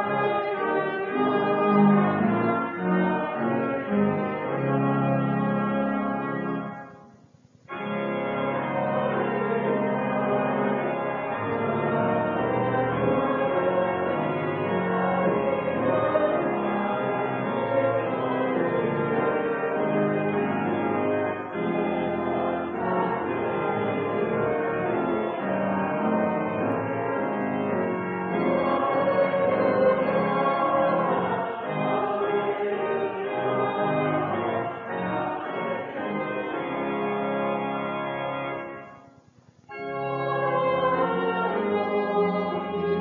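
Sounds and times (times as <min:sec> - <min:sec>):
church organ chords: 0:00.0 - 0:43.0.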